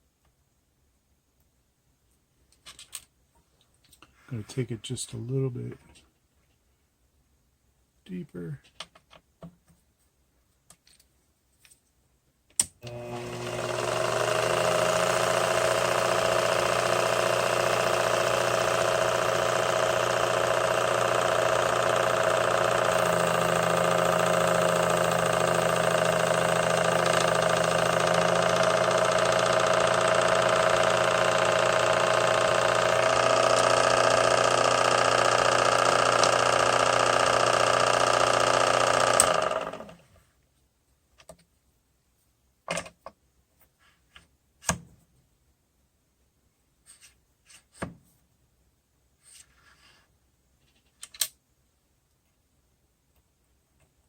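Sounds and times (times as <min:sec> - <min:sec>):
lathe motor whining: 0:12.8 - 0:40.0.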